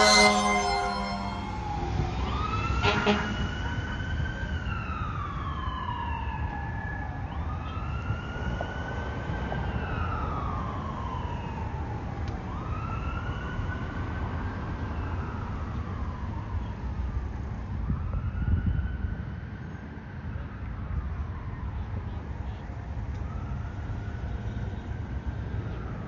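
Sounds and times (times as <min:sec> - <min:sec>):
siren wailing: 0:00.0 - 0:03.4
engine and traffic rumble: 0:01.6 - 0:26.0.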